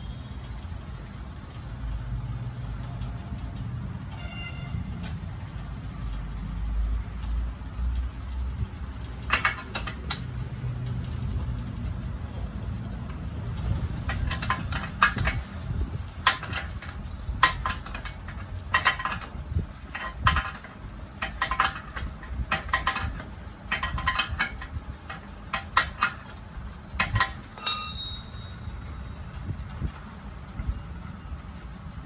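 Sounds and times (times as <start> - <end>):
spanner clinking on nut: 27.0 - 29.0
ringing metallic clang: 27.6 - 29.2.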